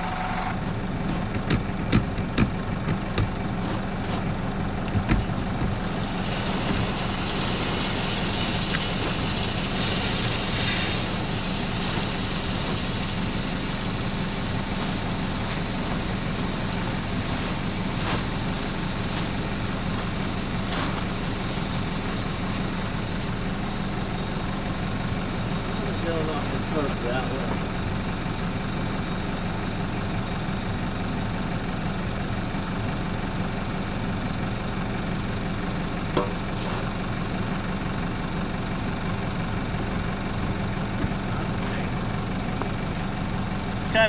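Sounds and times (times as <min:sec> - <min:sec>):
diesel engine idling: 0:00.0 - 0:44.0
steady hiss: 0:06.0 - 0:27.3.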